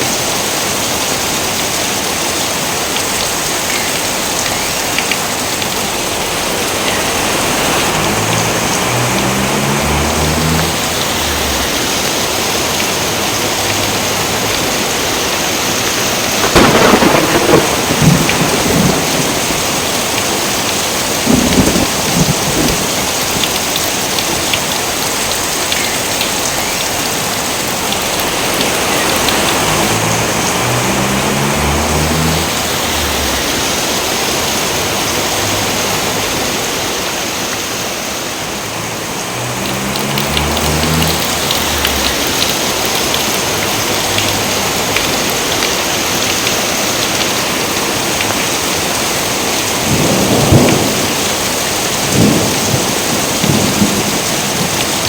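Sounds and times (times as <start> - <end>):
heavy rain: 0.0 - 55.0
thunderclaps: 16.3 - 24.2, 49.7 - 55.0.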